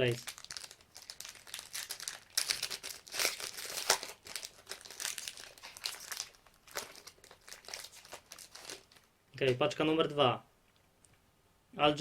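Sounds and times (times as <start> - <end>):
wrapper crinkling: 0.0 - 9.1.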